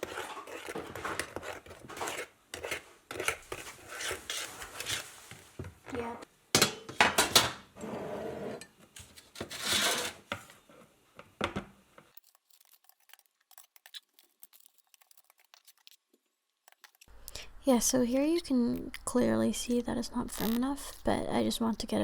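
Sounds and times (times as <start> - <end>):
metal utensil scraping a bowl: 0.0 - 5.2, 9.4 - 10.2.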